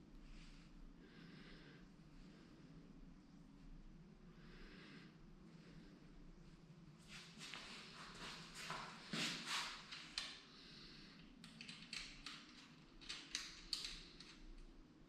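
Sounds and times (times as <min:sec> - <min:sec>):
faint handling rustles: 0:07.0 - 0:10.4.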